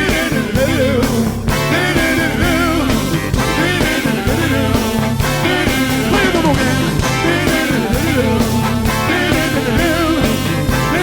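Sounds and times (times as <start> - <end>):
funk band playing groove: 0.0 - 11.0
bending lead line: 0.6 - 11.0.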